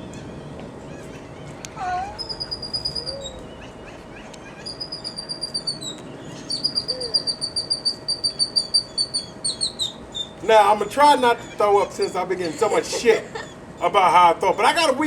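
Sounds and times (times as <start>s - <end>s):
low sliding bird call: 1.5s - 10.4s
bird chirping in high trills: 2.1s - 12.9s.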